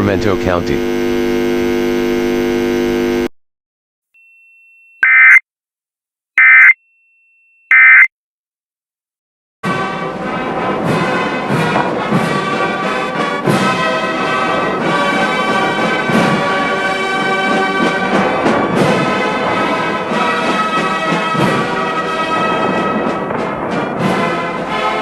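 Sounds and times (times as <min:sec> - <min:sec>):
orchestral music with brass: 0:09.6 - 0:25.0.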